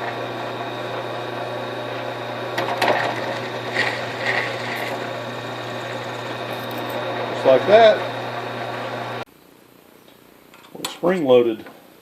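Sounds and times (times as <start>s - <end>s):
drill press running: 0.0s - 9.2s
cutter squealing: 0.1s - 9.2s.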